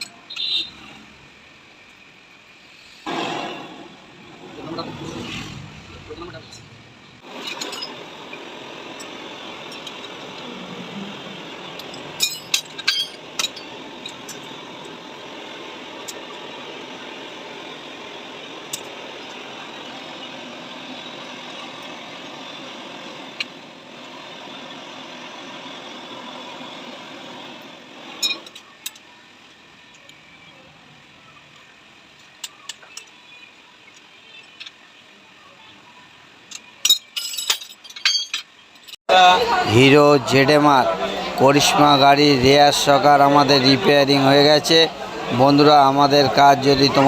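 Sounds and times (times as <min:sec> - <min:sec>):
running mechanical noise: 0:00.0 - 0:47.0
metallic clinks of tools: 0:11.8 - 0:14.5, 0:36.5 - 0:39.0.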